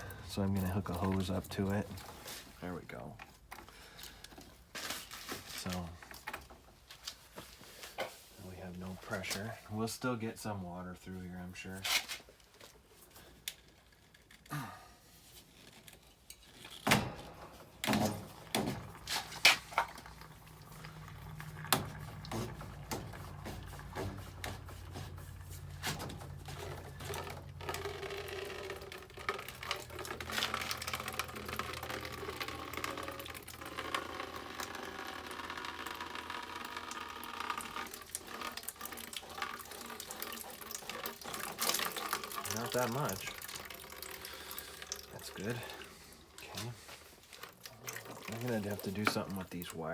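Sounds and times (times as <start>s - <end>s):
water running out of a hose: 17.7s - 49.9s.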